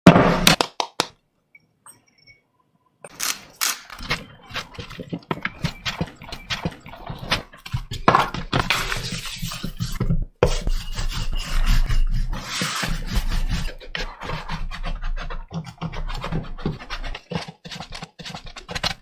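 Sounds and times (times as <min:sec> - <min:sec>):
rasping scraping on a surface: 0:04.1 - 0:19.0.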